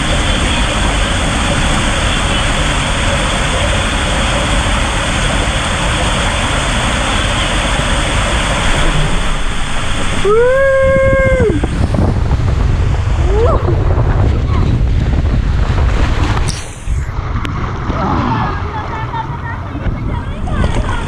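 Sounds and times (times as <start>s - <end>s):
water rushing: 0.0s - 21.0s
wind noise: 0.0s - 21.0s
person yelling: 10.2s - 11.6s.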